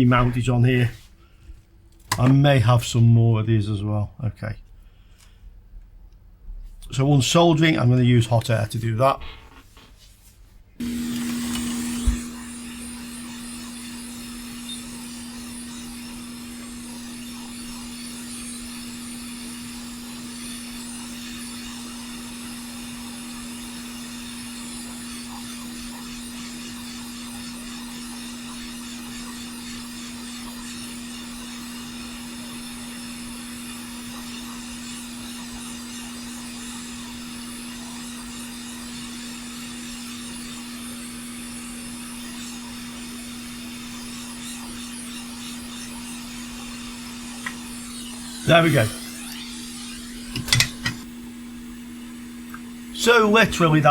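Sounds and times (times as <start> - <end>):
hot air station blowing: 10.8 - 53.9.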